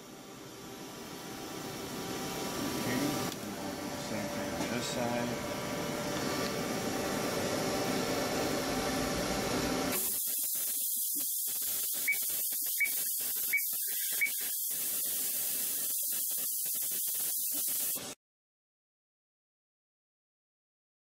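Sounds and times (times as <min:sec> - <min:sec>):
compressed air hissing: 0:09.9 - 0:18.1.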